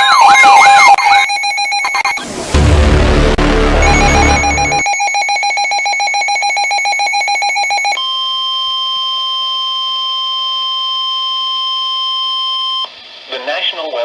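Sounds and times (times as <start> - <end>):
rapid electronic alert beeping: 0.0 - 2.3, 3.5 - 8.0
steady warning alarm tone: 0.0 - 2.3, 3.8 - 12.9
low rumble: 2.2 - 4.8.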